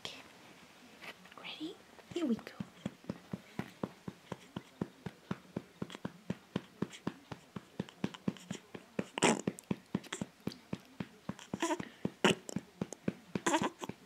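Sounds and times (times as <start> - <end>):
light regular taps: 2.0 - 14.0
person burping: 11.6 - 12.6.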